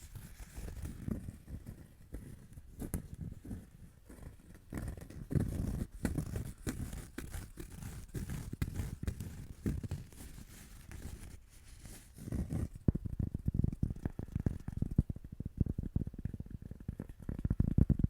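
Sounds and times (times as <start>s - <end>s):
rustling handling noises: 0.0s - 12.8s.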